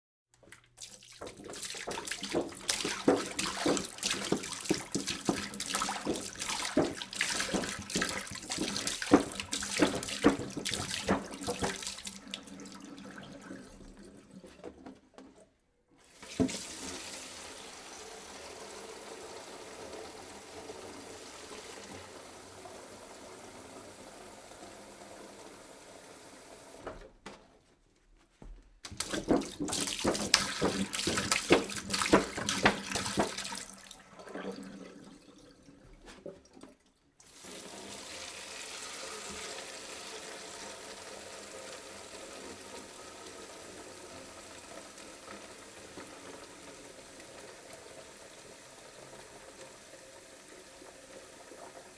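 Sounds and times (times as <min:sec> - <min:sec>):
water pouring from a jug: 0:00.4 - 0:15.3, 0:28.9 - 0:51.9.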